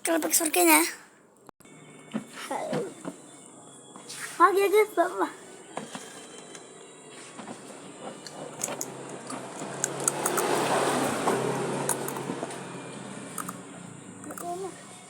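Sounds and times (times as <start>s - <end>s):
vehicle passing: 7.0s - 15.0s.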